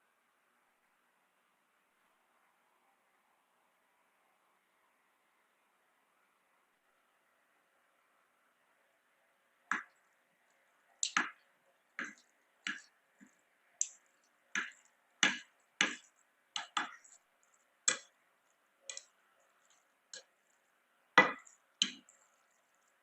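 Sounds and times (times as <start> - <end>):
eating clicks and taps: 9.7 - 10.0, 11.0 - 11.4, 12.0 - 18.1, 18.9 - 20.3, 21.2 - 22.9.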